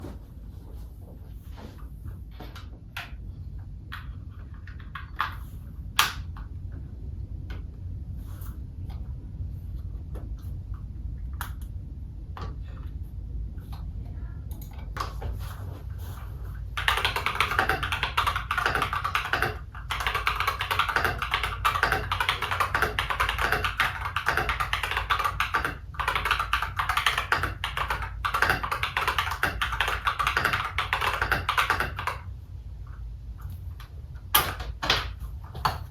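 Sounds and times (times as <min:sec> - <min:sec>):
mechanical keyboard typing: 0:16.8 - 0:32.2.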